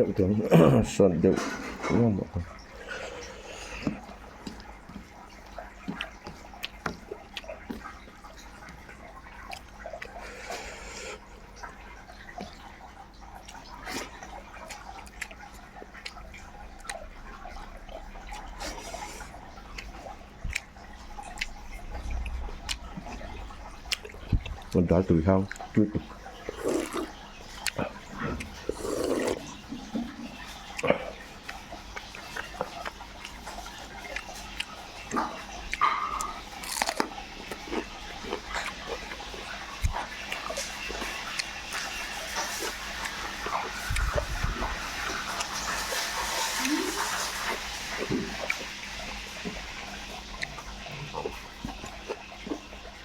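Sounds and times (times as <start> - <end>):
wet chewing: 2.4 - 53.0
mouth clicks and smacks: 17.9 - 24.8, 25.4 - 47.2.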